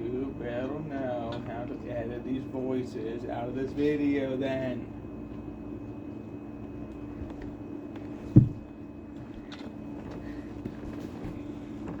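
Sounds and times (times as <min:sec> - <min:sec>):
steady low hum: 0:00.0 - 0:12.0
loud thump: 0:08.3 - 0:08.7.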